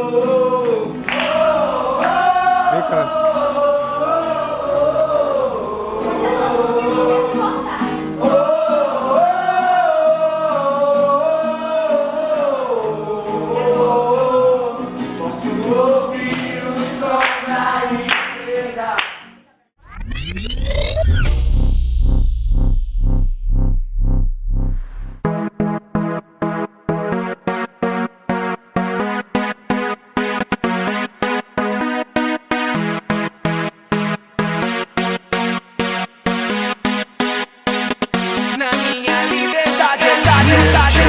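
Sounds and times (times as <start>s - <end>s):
gospel singing: 0.0s - 19.2s, 38.6s - 41.0s
backing music: 19.9s - 41.0s.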